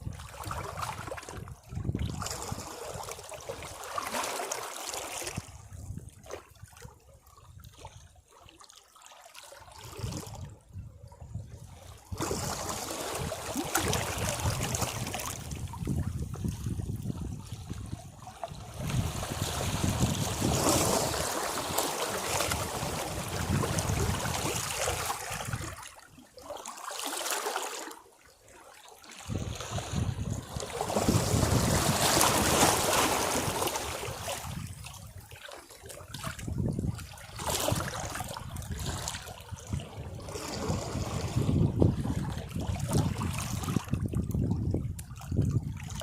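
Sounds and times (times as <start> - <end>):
sea waves breaking over rocks: 12.0 - 17.1, 17.7 - 25.9, 29.2 - 34.9, 36.4 - 44.1.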